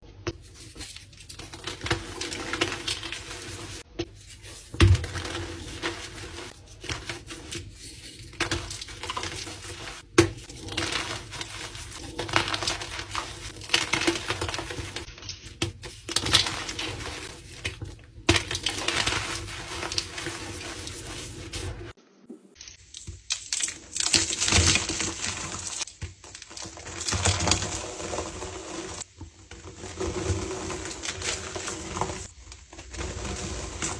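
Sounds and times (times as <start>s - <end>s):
chalk crunching and crumbling: 0.3s - 22.0s, 22.6s - 33.9s.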